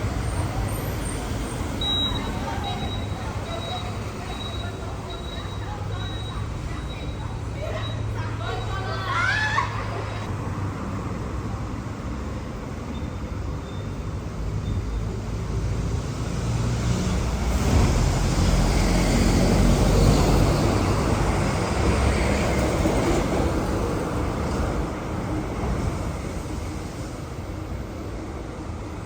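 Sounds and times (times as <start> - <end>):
passing motor vehicle: 13.4 - 26.6.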